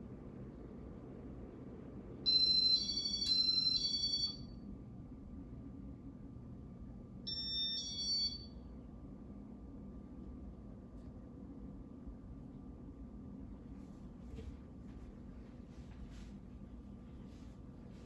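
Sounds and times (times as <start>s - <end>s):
steady low hum: 0.0s - 18.0s
ceiling fan electronic chime: 2.2s - 4.8s, 7.2s - 8.9s.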